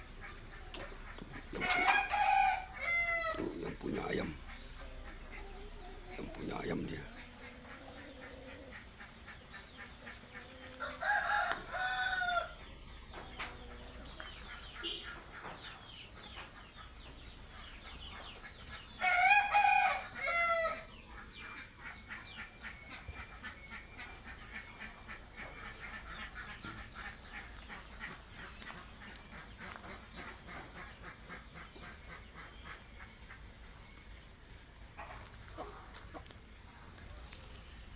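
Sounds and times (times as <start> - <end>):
chickens clucking: 0.0 - 37.9
rooster crowing: 1.5 - 3.6, 10.8 - 12.6, 19.0 - 20.9.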